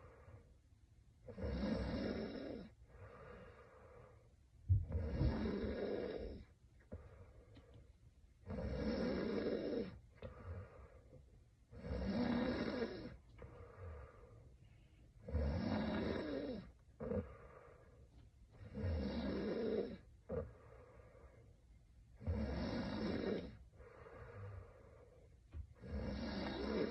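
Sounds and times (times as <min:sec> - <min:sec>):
soft breathing: 0:00.0 - 0:00.8, 0:02.2 - 0:08.5, 0:09.1 - 0:12.3, 0:13.0 - 0:15.2, 0:15.8 - 0:22.0, 0:23.2 - 0:26.9
woman snoring: 0:01.3 - 0:03.5, 0:04.8 - 0:06.5, 0:08.4 - 0:10.7, 0:11.7 - 0:13.2, 0:15.2 - 0:17.5, 0:18.6 - 0:20.6, 0:22.2 - 0:24.8, 0:25.8 - 0:26.9.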